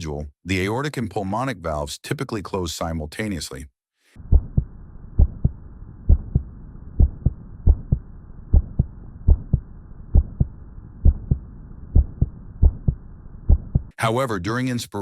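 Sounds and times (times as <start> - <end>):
heartbeat lub-dub: 4.2 - 13.9.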